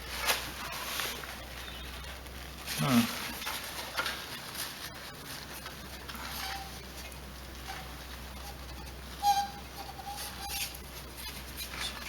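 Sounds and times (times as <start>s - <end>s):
paper rubbing on metal: 0.0s - 12.0s
short squeaks: 9.2s - 10.8s.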